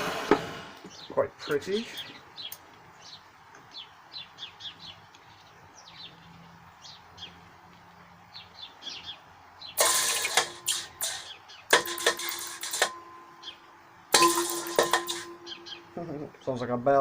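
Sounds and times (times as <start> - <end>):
small birds chirping: 0.7 - 17.0
loud metallic clangs: 9.8 - 13.3, 14.1 - 16.0.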